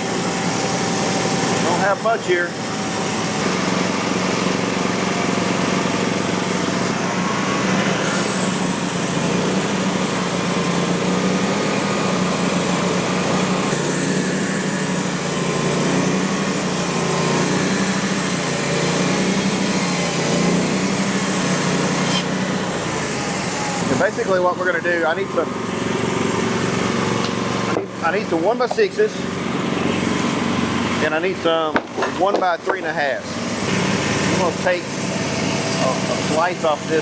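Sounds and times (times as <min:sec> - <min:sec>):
gasoline engine running: 0:00.0 - 0:37.0.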